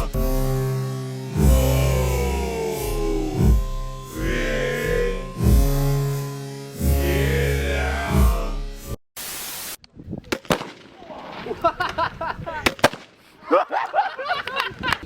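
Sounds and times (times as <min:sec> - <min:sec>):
voices: 0:04.1 - 0:05.4, 0:06.8 - 0:08.5
burst of hiss: 0:09.2 - 0:09.8
airsoft gun shots: 0:10.4 - 0:11.0, 0:12.6 - 0:13.2.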